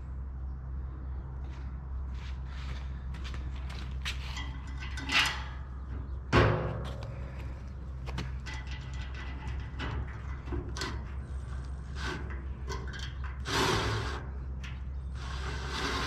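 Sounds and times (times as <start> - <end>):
steady low hum: 0.0 - 16.0
metal scrape: 8.4 - 16.0.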